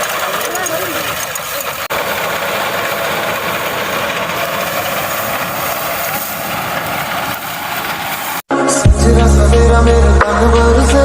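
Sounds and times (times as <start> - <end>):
tractor engine under load: 0.0 - 8.5.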